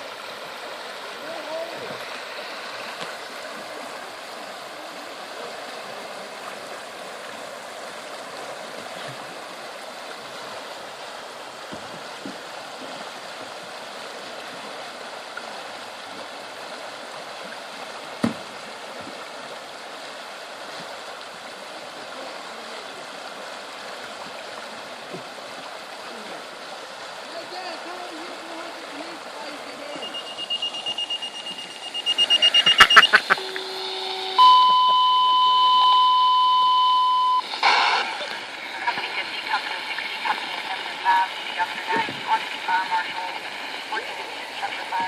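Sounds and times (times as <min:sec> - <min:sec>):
river water flowing: 0:00.0 - 0:45.0
sharp knock: 0:18.2 - 0:18.4.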